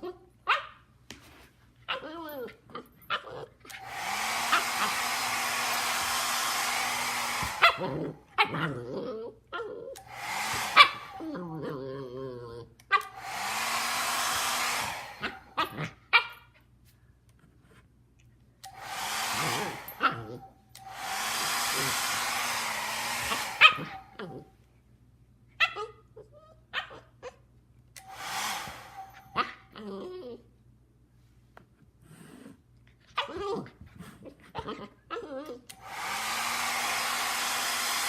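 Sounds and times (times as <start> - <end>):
dog barking and yipping: 0.4 - 0.8, 1.9 - 8.8, 10.1 - 11.4, 12.9 - 16.5, 18.9 - 24.5, 28.1 - 29.7
hair dryer blowing: 3.7 - 8.2, 10.0 - 11.4, 13.0 - 15.7, 18.6 - 24.4, 28.0 - 29.5, 35.7 - 38.0.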